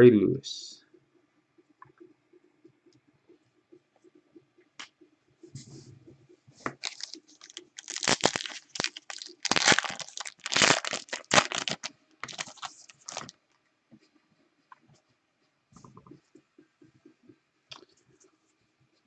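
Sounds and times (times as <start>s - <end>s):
wrapper tearing and crinkling: 6.8s - 13.3s.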